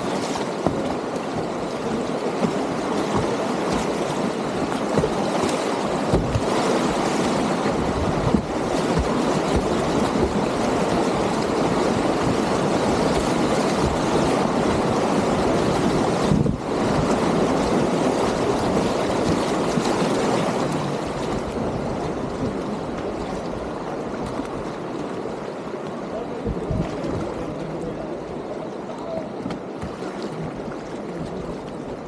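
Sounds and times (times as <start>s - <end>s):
sharp water splashes: 0.0s - 22.0s
whitewater rapids rushing: 0.0s - 32.0s.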